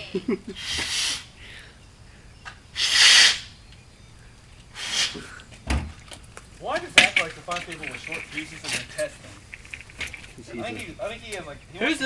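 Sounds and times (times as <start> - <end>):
dull thump: 5.6 - 6.0.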